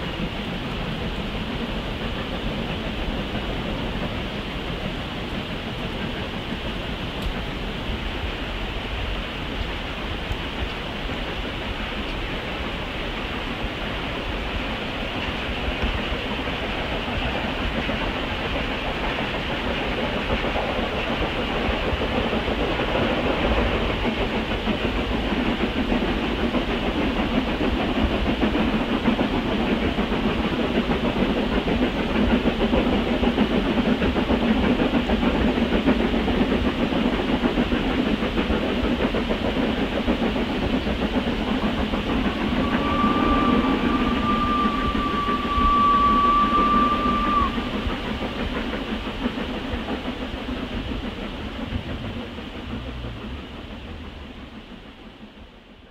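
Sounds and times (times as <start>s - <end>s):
steam locomotive exhaust beats: 0.0s - 55.9s
steam whistle: 42.2s - 48.2s.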